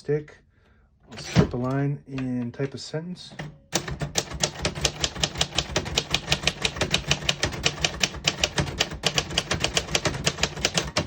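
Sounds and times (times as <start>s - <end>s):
typewriter keystrokes: 3.4s - 11.0s.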